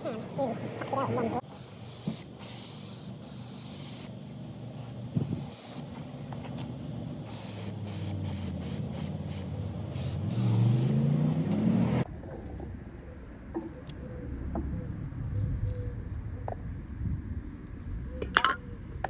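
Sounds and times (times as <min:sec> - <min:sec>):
aerosol can spraying in bursts: 0:01.4 - 0:04.1, 0:04.8 - 0:05.9, 0:07.3 - 0:11.0.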